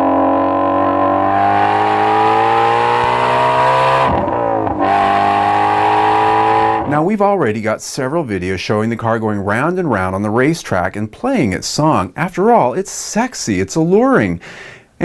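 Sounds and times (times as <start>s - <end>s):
car engine accelerating: 0.0s - 6.9s.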